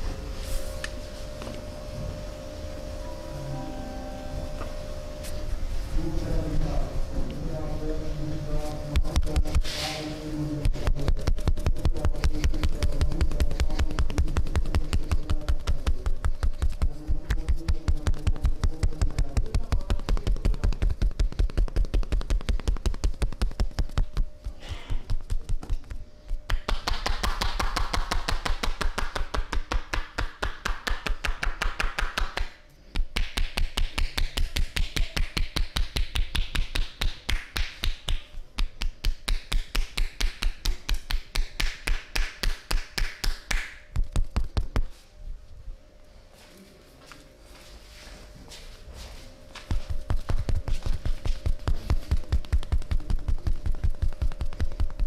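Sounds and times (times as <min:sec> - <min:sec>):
hands slapping on body: 0:19.8 - 0:24.3, 0:25.1 - 0:44.9, 0:49.6 - 0:55.0.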